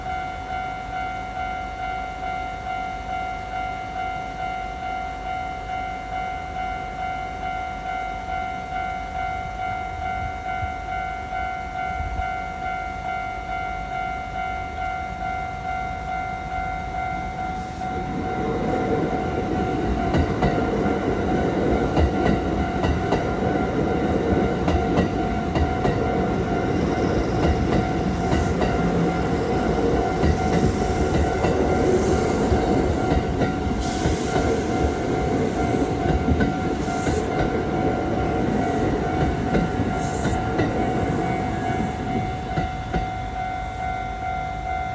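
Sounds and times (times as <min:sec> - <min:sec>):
level crossing warning bell: 0:00.0 - 0:44.9
train wheels rumbling and clacking: 0:17.1 - 0:43.4.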